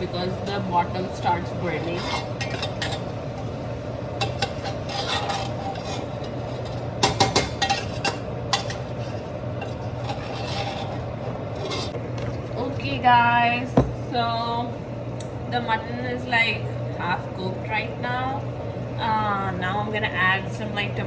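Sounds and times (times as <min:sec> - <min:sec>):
steady low hum: 0:00.0 - 0:21.0
spoon stirring and scraping pot: 0:01.1 - 0:03.6, 0:04.2 - 0:13.0
spoon clinking against pot: 0:07.0 - 0:08.9.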